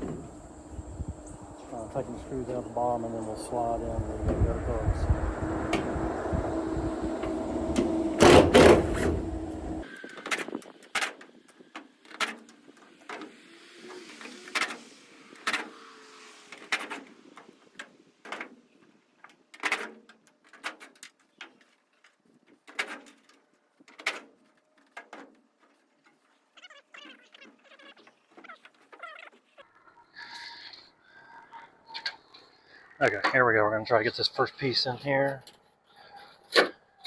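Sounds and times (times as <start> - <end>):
knocks and clinks on metal roof: 7.2 - 10.5.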